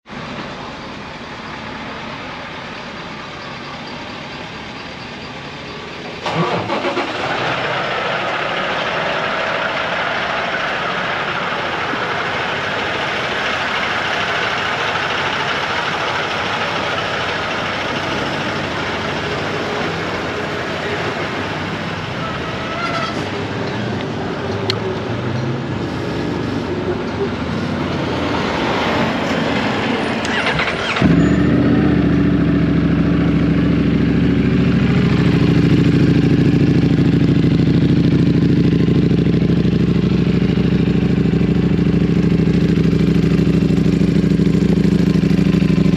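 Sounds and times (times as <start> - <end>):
motorcycle engine starting and idling: 6.0 - 25.8, 29.1 - 45.9.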